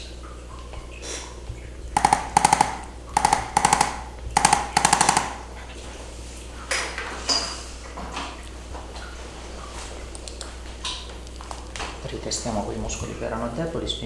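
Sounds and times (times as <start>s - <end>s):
bursts of rapid taps: 2.0s - 5.7s.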